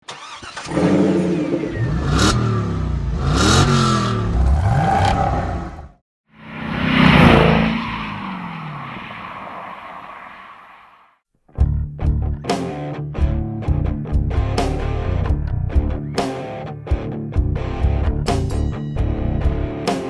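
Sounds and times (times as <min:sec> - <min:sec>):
car engine revving: 0:00.2 - 0:10.3
car driving past: 0:00.8 - 0:11.0.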